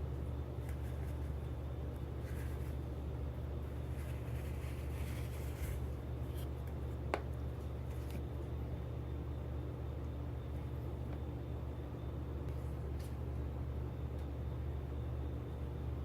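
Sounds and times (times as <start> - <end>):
steady low hum: 0.0 - 16.0
light scratching and rustling: 2.2 - 2.9, 3.7 - 6.5.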